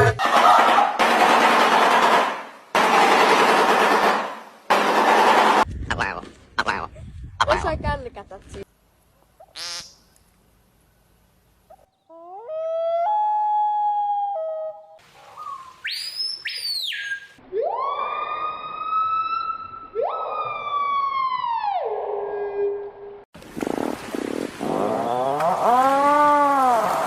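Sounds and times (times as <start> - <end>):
bird calls: 14.8 - 17.4
high bird whistles: 15.4 - 17.4
long rising and falling calls: 15.4 - 20.4.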